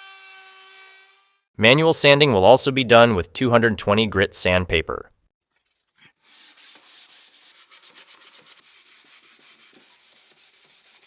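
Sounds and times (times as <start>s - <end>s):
sandpaper rubbing on wood: 6.2s - 11.0s.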